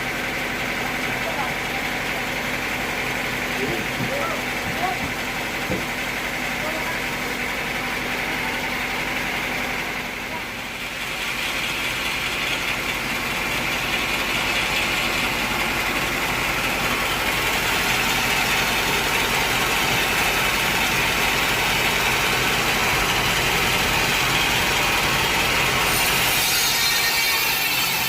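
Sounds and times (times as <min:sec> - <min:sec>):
sawmill machinery running: 0:00.0 - 0:28.0.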